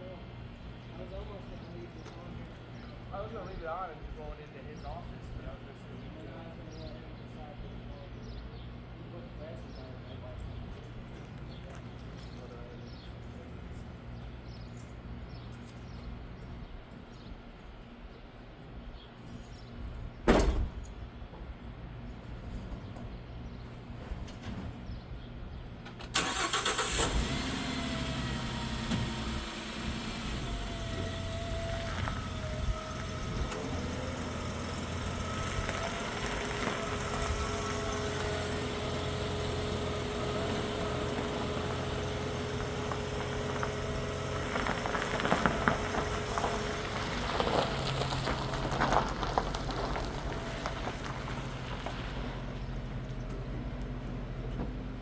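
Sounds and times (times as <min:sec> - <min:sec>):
van engine starting and running: 0:25.8 - 0:55.0.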